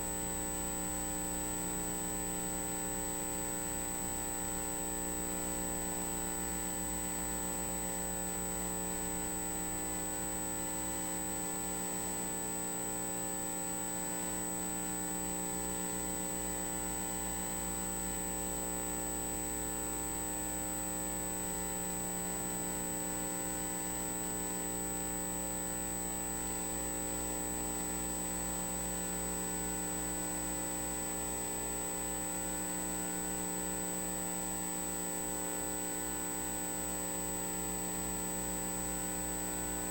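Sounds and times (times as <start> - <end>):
electrical hum with high whine: 0.0 - 39.9.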